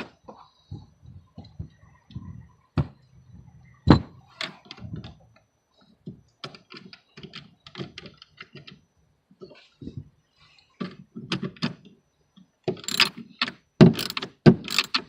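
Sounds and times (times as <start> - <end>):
hand tools clicking and knocking: 12.7 - 15.0.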